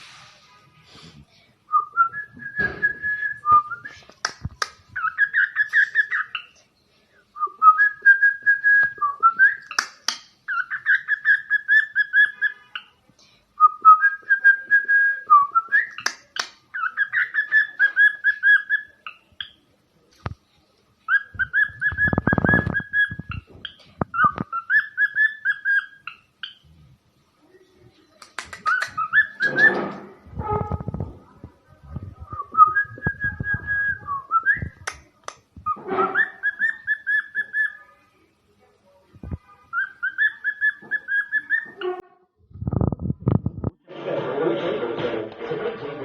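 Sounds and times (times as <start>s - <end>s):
cockatiel whistling a tune: 5.0s - 6.4s, 10.5s - 12.6s, 16.8s - 19.5s, 21.1s - 23.4s, 24.2s - 26.6s, 28.7s - 29.9s, 35.6s - 37.8s, 39.7s - 41.9s.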